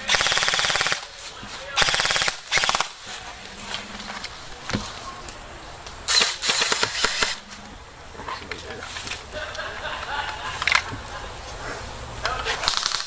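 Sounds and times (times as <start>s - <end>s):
airsoft guns firing bursts: 0.0s - 1.2s, 1.8s - 3.0s, 6.1s - 7.4s, 12.6s - 13.0s.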